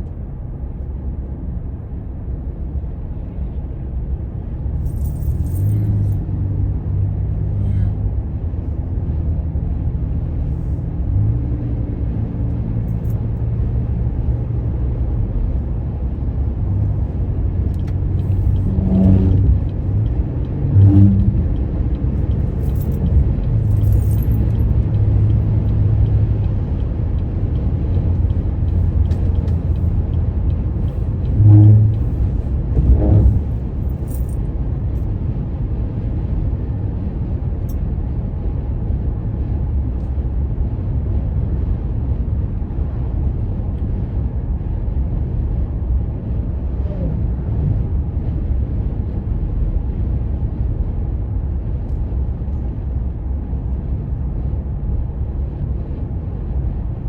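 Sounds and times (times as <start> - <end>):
motor vehicle rumbling: 0.0 - 57.0.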